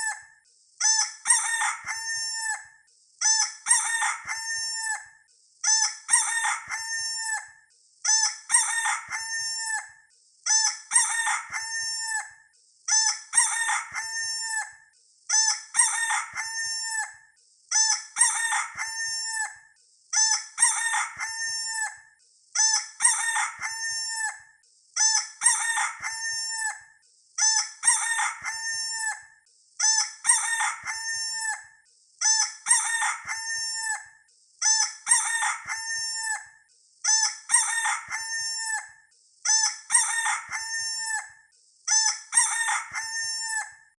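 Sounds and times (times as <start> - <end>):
rooster crowing: 1.3 - 2.6, 3.7 - 5.1, 6.1 - 7.5, 8.5 - 9.9, 10.9 - 12.3, 13.4 - 14.8, 15.8 - 17.2, 18.2 - 19.6, 20.6 - 22.0, 23.0 - 24.4, 25.4 - 26.9, 27.9 - 29.2, 30.2 - 31.6, 32.7 - 34.0, 35.1 - 36.4, 37.5 - 38.9, 39.9 - 41.3, 42.3 - 43.7.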